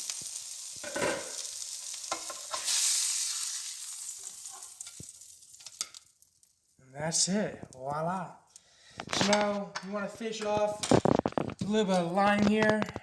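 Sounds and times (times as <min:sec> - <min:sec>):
fish sizzling in a pan: 0:00.0 - 0:06.8.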